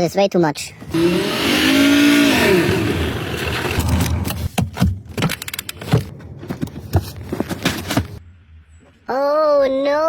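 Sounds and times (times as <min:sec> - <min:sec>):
vehicle engine revving: 0:00.8 - 0:04.2.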